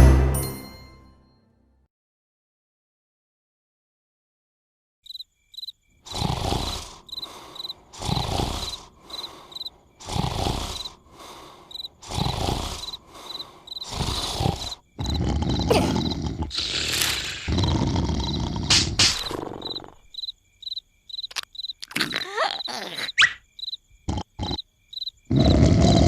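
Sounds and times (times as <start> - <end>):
crickets chirping: 5.0 - 26.0
cartoon snoring: 6.1 - 20.1, 21.8 - 23.4, 24.0 - 24.6, 25.3 - 26.0.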